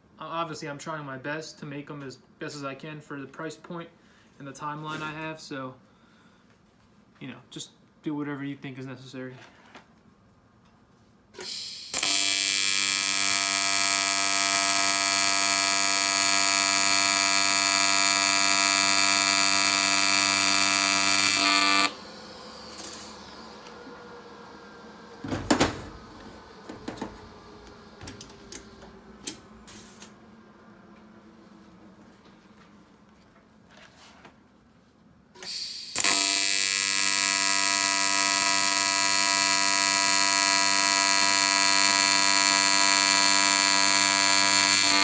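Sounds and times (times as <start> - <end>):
welding arc crackle: 11.4 - 23.3, 35.5 - 45.0
welding arc buzz: 11.4 - 23.8, 28.0 - 30.2, 35.4 - 45.0.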